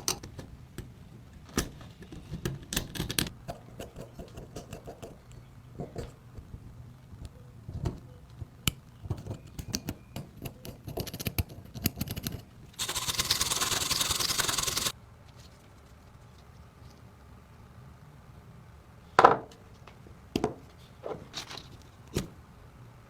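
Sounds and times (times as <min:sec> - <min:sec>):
loud steady rasping: 0:12.8 - 0:14.9.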